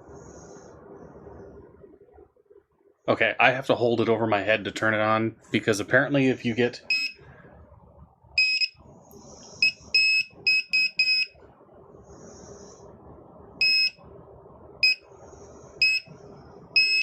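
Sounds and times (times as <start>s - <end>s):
metal detector beeping: 6.9s - 7.2s, 8.4s - 8.8s, 9.6s - 11.3s, 13.6s - 14.0s, 14.8s - 15.0s, 15.8s - 16.1s, 16.8s - 17.0s.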